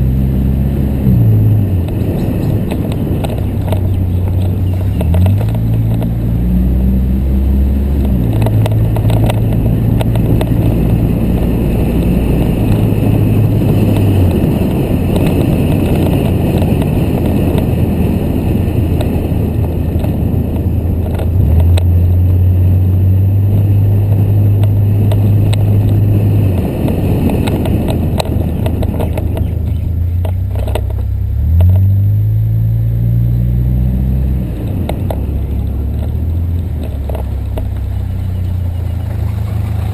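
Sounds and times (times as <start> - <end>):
car engine: 0.0 - 39.9
road noise: 0.0 - 39.9.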